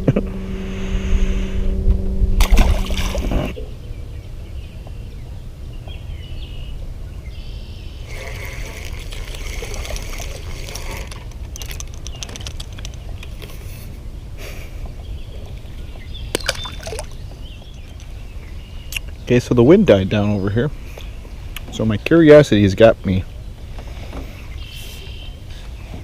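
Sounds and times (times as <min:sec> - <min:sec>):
wind rumbling on microphone: 0:00.0 - 0:26.0
water splashing against boat: 0:02.4 - 0:03.6, 0:08.0 - 0:12.9.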